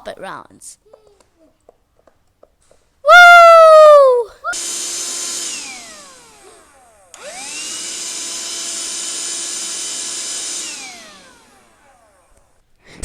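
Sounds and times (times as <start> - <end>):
small electric motor whining: 4.5 - 12.6.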